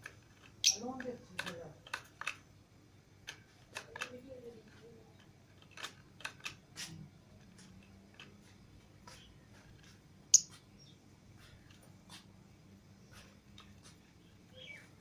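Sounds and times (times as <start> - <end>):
lovebirds clicking and chirping: 0.0 - 2.5, 3.2 - 12.3, 13.1 - 15.0.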